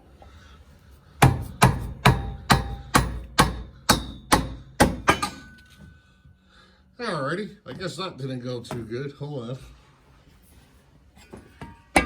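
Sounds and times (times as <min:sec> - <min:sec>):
rubber mallet knocking on metal: 0:01.2 - 0:05.4.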